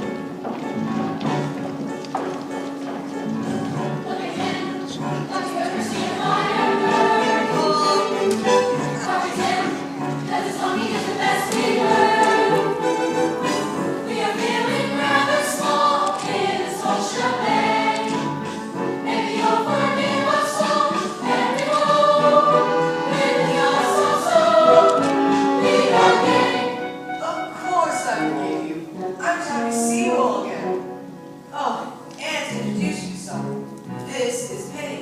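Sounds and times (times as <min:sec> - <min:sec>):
children singing in chorus: 0:03.8 - 0:18.3, 0:19.0 - 0:26.9.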